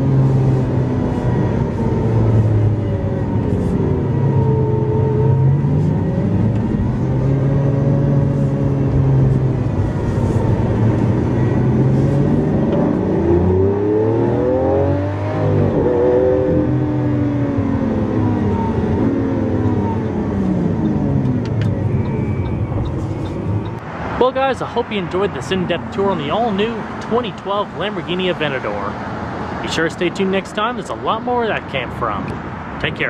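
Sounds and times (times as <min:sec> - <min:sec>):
car engine running: 0:17.9 - 0:23.8.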